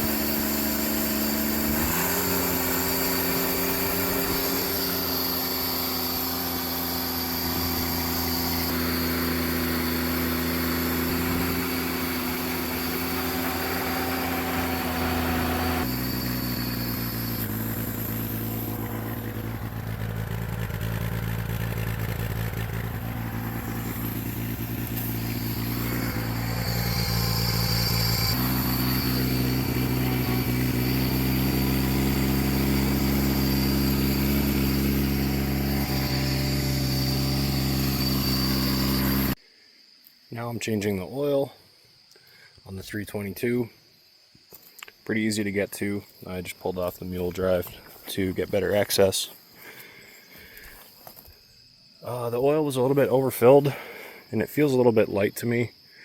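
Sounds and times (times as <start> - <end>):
engine idling: 0.0 - 39.4.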